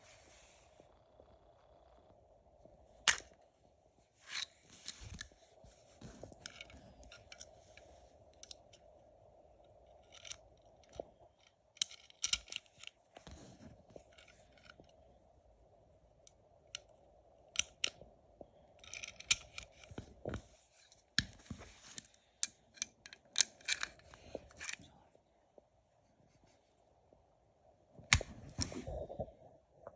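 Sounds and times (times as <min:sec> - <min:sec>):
faint steady hum: 0:00.0 - 0:29.9
pistol metallic clicks and rattles: 0:10.0 - 0:13.0.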